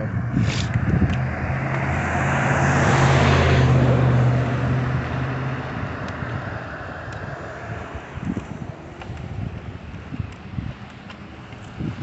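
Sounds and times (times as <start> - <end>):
vehicle engine passing by: 0.0 - 8.8
road noise: 0.0 - 12.0.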